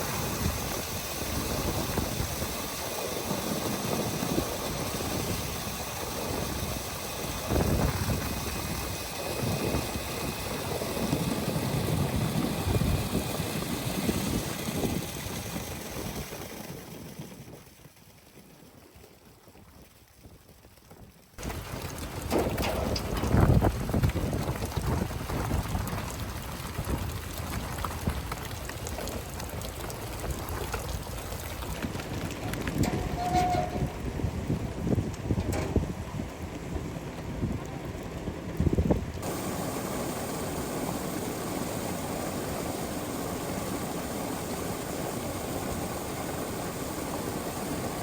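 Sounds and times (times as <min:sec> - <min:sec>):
wind buffeting microphone: 0:00.0 - 0:17.7, 0:21.4 - 0:43.6.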